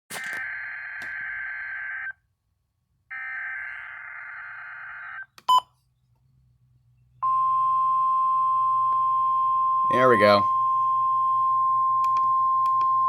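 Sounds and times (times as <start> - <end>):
steady warning alarm tone: 7.2 - 13.0.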